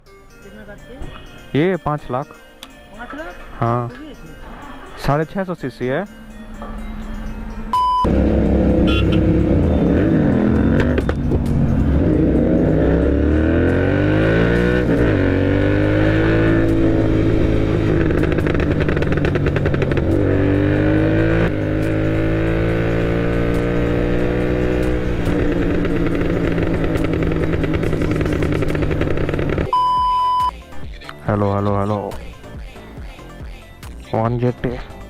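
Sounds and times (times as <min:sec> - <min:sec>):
motorcycle engine accelerating: 0:07.9 - 0:29.8.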